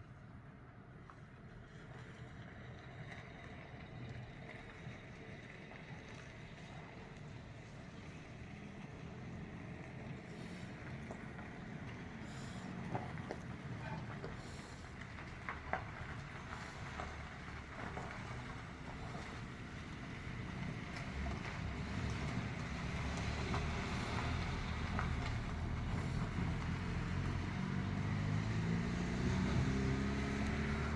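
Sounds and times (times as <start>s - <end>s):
low engine rumble: 0.0s - 30.9s.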